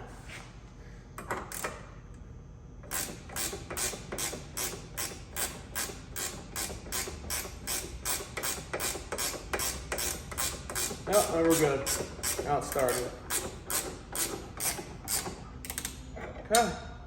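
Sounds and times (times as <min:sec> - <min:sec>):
ratchet wrench clicking: 0:02.9 - 0:16.0.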